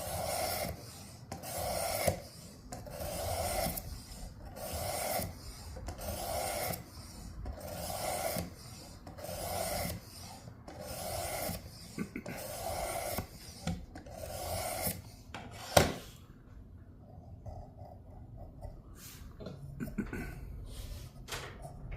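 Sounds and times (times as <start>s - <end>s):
knife rasping on sharpener: 0.0s - 15.8s.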